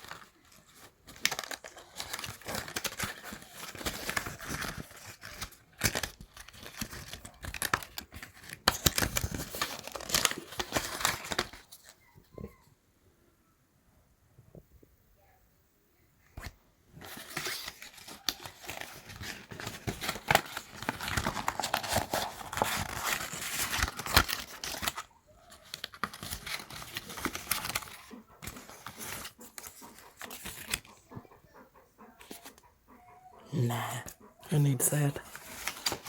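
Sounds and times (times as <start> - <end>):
packaging tearing and crinkling: 0.0 - 11.9, 17.0 - 30.8, 35.2 - 36.0.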